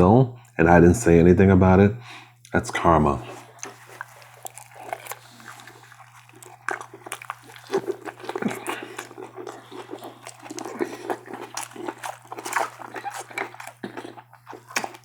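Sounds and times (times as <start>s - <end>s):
steady low hum: 0.0s - 15.0s
person chewing with wet smacks: 3.3s - 15.0s.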